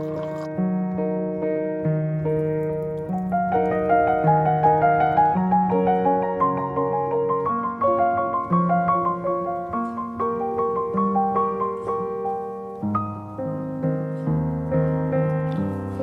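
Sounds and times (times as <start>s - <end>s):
gentle piano melody: 0.0s - 16.0s.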